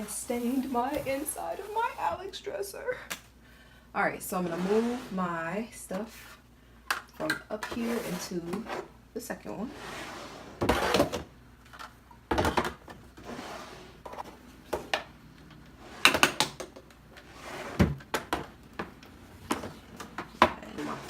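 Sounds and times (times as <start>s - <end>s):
drawers sliding: 4.3s - 5.3s, 9.7s - 11.3s, 12.4s - 14.9s, 15.7s - 16.4s, 17.2s - 18.4s
thuds and clatters of small items: 12.3s - 13.0s.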